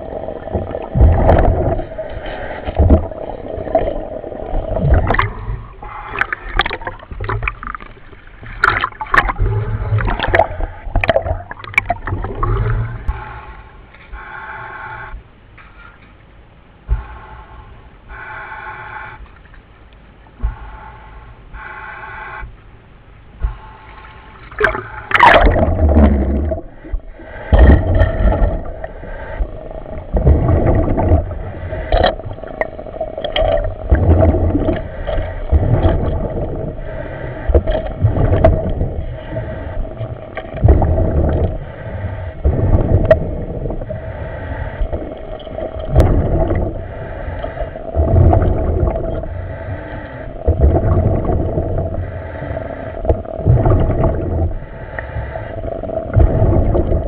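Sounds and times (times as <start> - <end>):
exhaust bubbles gurgling: 0.0 - 13.3, 24.5 - 57.0
steady hum: 0.0 - 57.0
diver breathing in helmet: 12.6 - 15.2, 16.9 - 19.3, 20.4 - 22.6, 23.4 - 40.6, 41.2 - 57.0.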